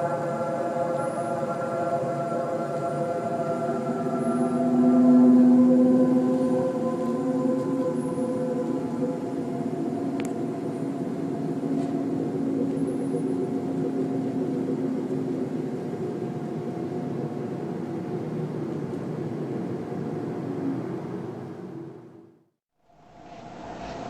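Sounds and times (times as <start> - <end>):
low droning hum: 0.0 - 21.9
rushing noise: 22.9 - 24.0.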